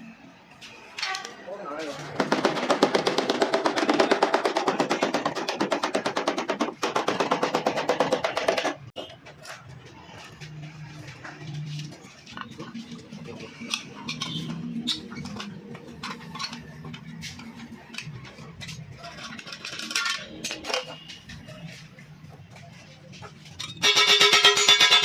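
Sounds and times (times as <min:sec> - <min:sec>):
hand tools tapping sheet metal: 0:01.9 - 0:08.9, 0:23.6 - 0:25.0.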